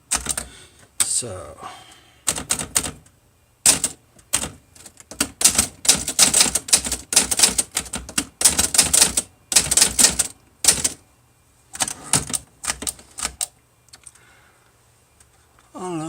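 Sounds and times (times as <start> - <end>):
manual typewriter typing: 0.0 - 1.1, 2.3 - 11.0, 11.8 - 14.1.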